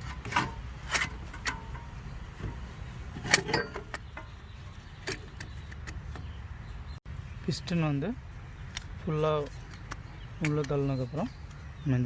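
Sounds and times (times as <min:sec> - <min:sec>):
tools and brake parts clicking: 0:00.0 - 0:06.4, 0:08.7 - 0:11.6.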